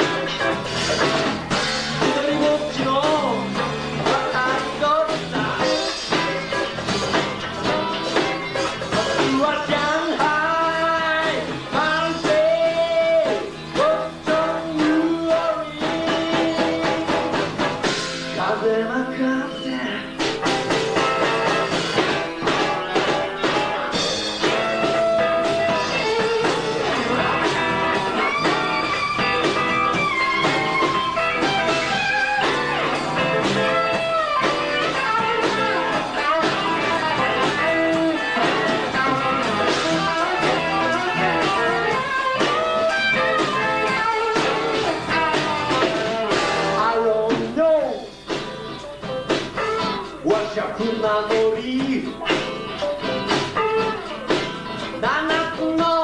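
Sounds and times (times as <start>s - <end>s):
bass guitar: 0.0s - 56.0s
drums: 0.0s - 56.0s
lead guitar solo: 20.0s - 46.8s, 52.2s - 55.0s.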